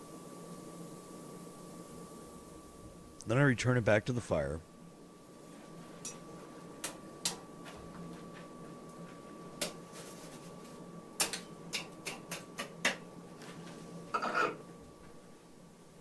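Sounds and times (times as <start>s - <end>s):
steady hum: 0.0s - 9.7s.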